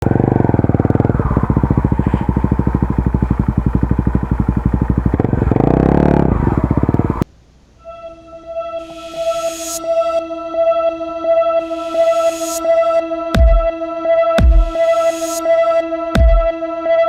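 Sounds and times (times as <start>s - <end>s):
motorcycle engine running: 0.0s - 7.2s.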